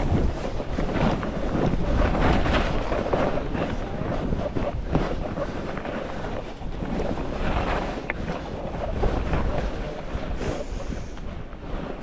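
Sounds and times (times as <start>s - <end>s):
wind buffeting microphone: 0.0s - 12.0s
skis hissing over snow: 4.9s - 12.0s.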